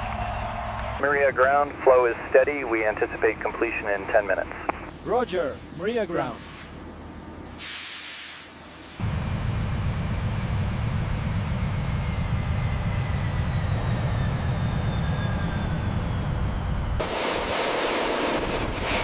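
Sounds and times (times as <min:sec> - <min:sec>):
jet engines rumbling: 0:00.0 - 0:19.0
rushing hiss: 0:04.9 - 0:06.8, 0:07.6 - 0:09.0
high whines falling in pitch: 0:09.0 - 0:19.0.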